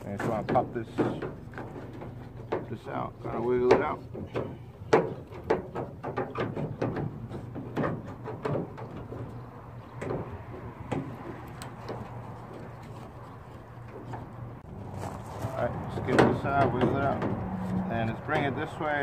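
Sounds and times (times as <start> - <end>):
door handle rattling and knocking: 3.6 - 12.0.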